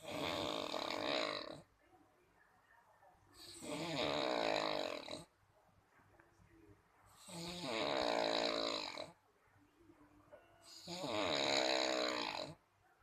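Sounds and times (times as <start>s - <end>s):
person snoring: 0.0s - 1.6s, 3.4s - 5.3s, 7.2s - 9.2s, 10.7s - 12.6s.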